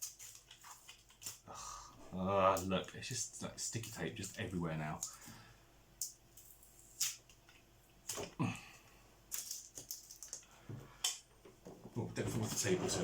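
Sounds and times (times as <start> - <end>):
sticky tape peeling off plastic: 6.4 - 7.4.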